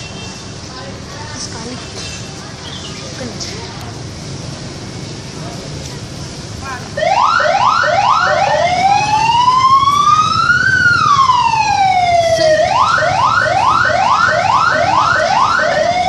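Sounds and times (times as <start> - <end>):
bus horn siren yelps and wails: 7.0 - 16.0.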